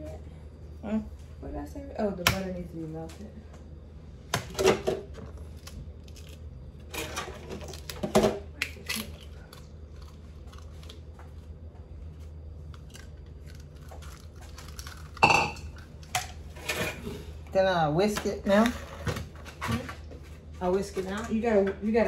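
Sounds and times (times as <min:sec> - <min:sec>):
steady low hum: 0:00.0 - 0:22.0
bowls and utensils clattering: 0:15.2 - 0:15.7.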